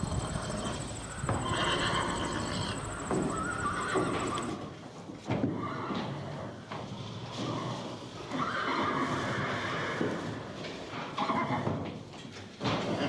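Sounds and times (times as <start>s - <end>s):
horse neighing: 0.0s - 4.6s.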